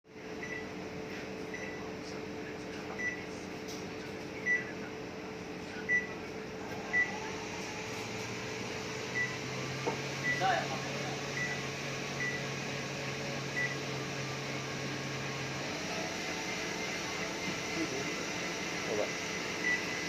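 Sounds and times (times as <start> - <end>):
steady hum: 0.1 - 20.0
microwave keypad beeps: 0.4 - 0.7, 1.5 - 1.9, 3.0 - 3.3, 4.4 - 4.7, 5.9 - 6.2, 6.9 - 7.2, 9.1 - 9.4, 10.2 - 10.5, 11.3 - 12.5, 13.6 - 13.8, 19.6 - 20.0.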